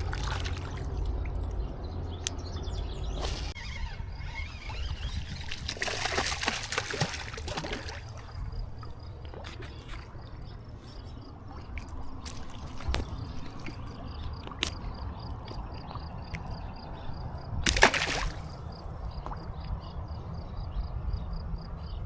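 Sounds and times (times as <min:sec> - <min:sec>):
river water splashing: 0:00.0 - 0:01.5, 0:04.4 - 0:16.6, 0:17.5 - 0:19.8.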